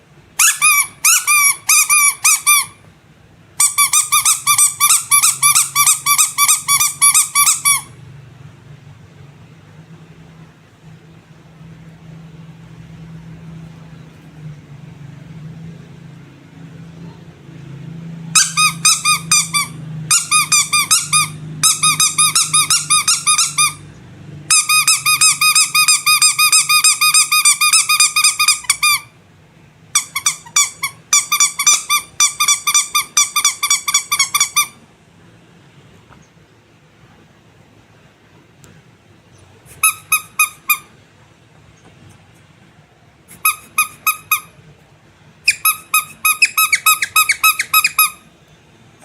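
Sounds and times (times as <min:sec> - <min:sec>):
squeaky rubber toy squeaking: 0:00.4 - 0:02.9, 0:03.6 - 0:08.0, 0:18.3 - 0:29.2, 0:29.9 - 0:34.9, 0:39.7 - 0:41.0, 0:43.3 - 0:44.6, 0:45.4 - 0:48.3.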